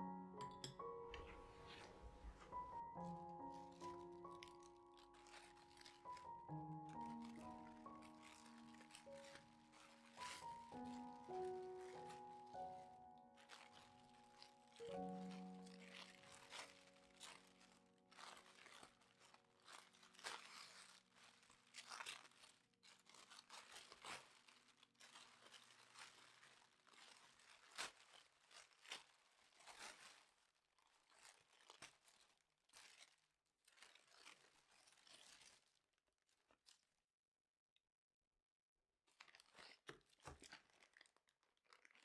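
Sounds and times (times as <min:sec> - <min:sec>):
quiet background music: 0:00.0 - 0:22.4
packaging rustling and crinkling: 0:00.0 - 0:37.0, 0:39.1 - 0:42.0.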